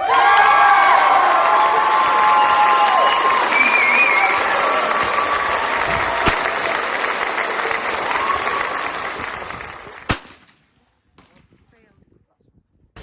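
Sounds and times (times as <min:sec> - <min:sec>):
applause and cheering: 0:00.0 - 0:10.3
sharp crack: 0:06.1 - 0:07.0, 0:10.0 - 0:10.6.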